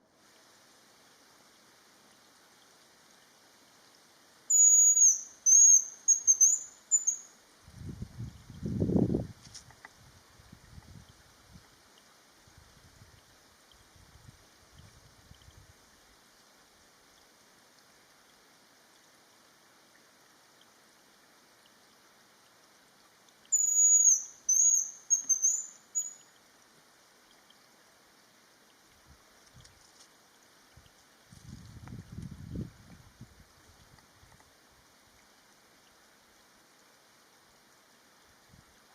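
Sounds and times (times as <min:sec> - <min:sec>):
faint steady hiss: 0:00.0 - 0:38.9
grouse whistled song: 0:04.5 - 0:07.3, 0:23.5 - 0:26.3.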